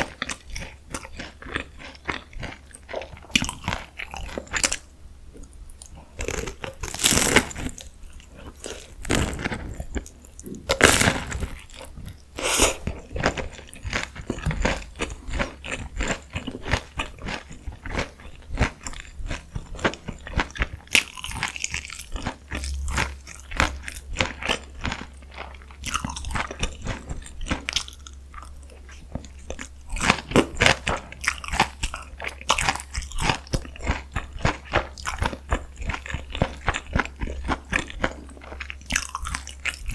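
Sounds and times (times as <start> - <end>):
crunching bites of fried food: 0.0 - 4.9, 5.8 - 39.9
crackling chewing: 0.0 - 39.9.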